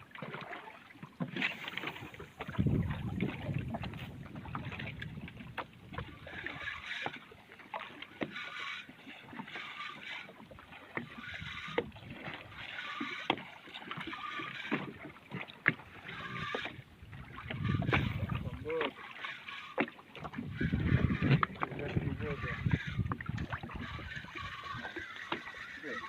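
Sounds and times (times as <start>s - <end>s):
water splashing in surges: 0.0s - 26.0s.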